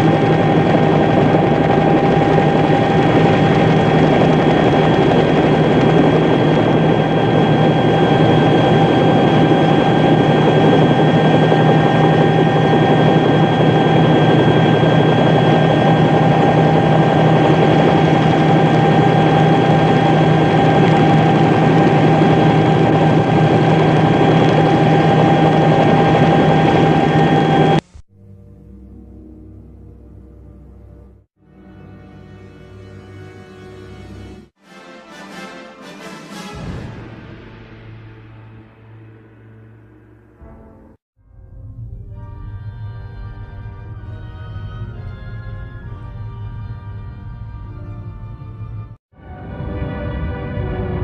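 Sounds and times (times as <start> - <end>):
rushing noise: 0.0 - 28.0
engine-like drone with whining tones: 0.0 - 31.2, 37.5 - 51.0.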